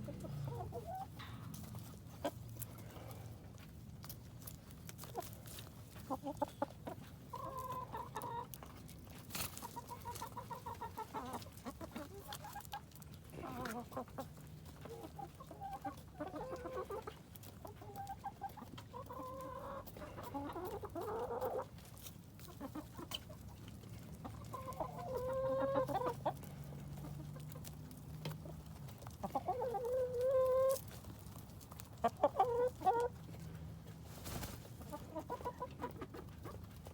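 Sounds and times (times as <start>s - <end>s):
hens clucking and squawking: 0.0s - 36.9s.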